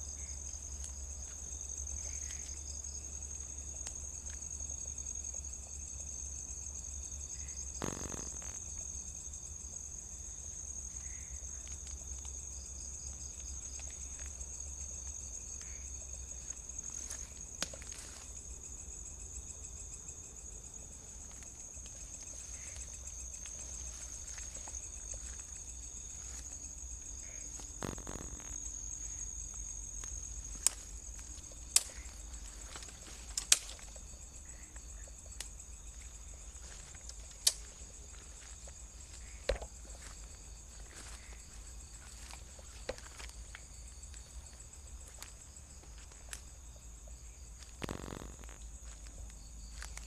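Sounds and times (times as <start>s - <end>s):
insects chirring: 0.0s - 50.0s
sharp clicks: 33.3s - 33.8s.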